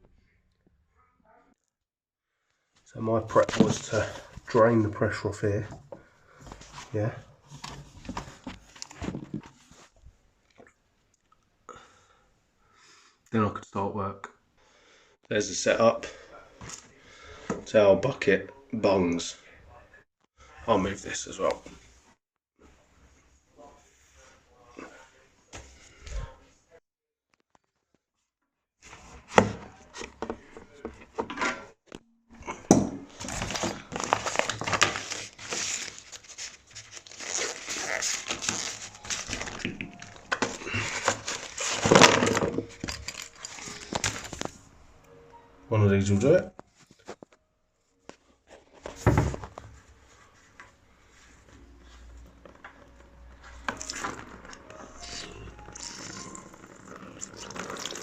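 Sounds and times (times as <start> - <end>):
plastic crinkling: 33.1 - 44.6
tools clattering: 39.2 - 44.6.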